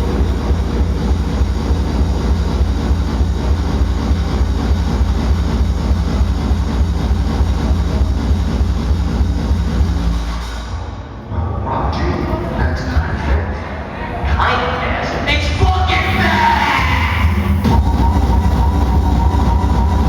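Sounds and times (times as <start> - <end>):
heavy kick drum: 0.0 - 10.3
hard dance music: 0.0 - 10.6, 14.4 - 20.0.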